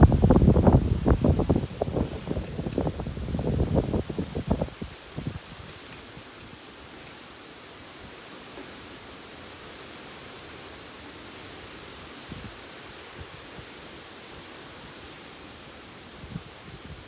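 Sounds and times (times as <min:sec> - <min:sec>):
strong wind rushing: 0:00.0 - 0:05.7
wind buffeting microphone: 0:00.0 - 0:06.6, 0:16.2 - 0:17.0.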